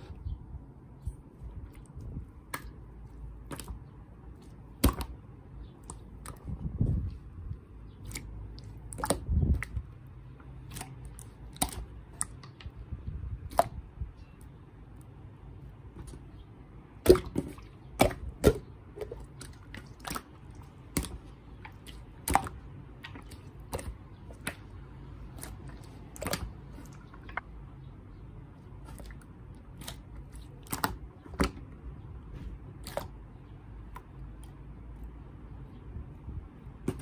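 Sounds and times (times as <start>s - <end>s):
slime wet clicks and pops: 22.2s - 24.7s.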